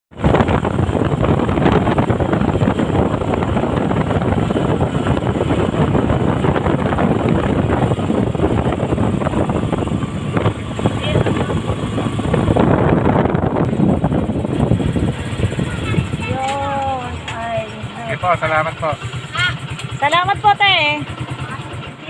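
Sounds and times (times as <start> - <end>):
wind buffeting the microphone: 0.1 - 18.6
moving vehicle running noise: 0.1 - 22.0.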